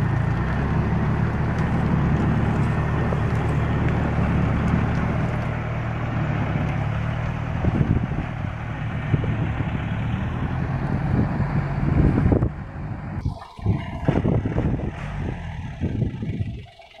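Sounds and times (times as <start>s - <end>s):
engines running under load: 0.0s - 17.0s
wind on microphone: 7.6s - 16.7s.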